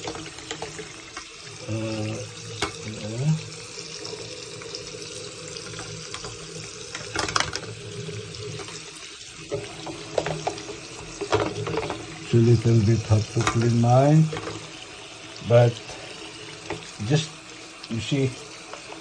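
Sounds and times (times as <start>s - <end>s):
tap water running: 0.0s - 19.0s
sharp clicks and knocks: 13.2s - 14.7s.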